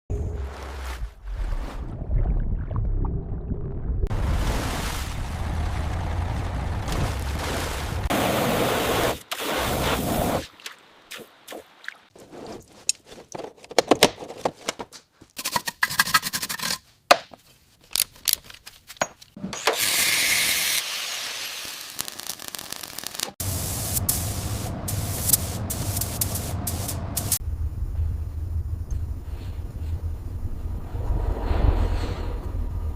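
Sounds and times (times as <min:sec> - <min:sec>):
spray hiss: 0:20.0 - 0:27.4
low engine rumble: 0:23.5 - 0:32.9.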